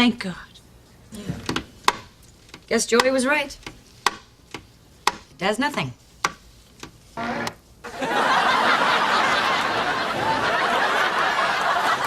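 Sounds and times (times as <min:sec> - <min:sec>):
studio audience laughing: 0:07.9 - 0:12.0.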